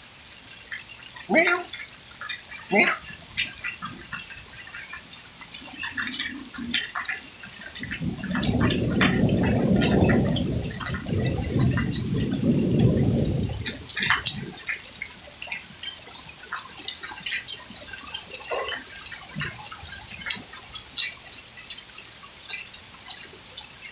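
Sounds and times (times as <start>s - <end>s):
water dripping: 0.0s - 23.9s
water rushing and gurgling: 0.0s - 23.9s.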